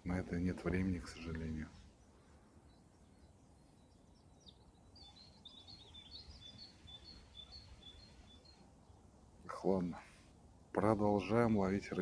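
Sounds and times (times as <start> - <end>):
low rumble of wind: 0.0 - 12.0
small bird chirping: 0.1 - 9.4.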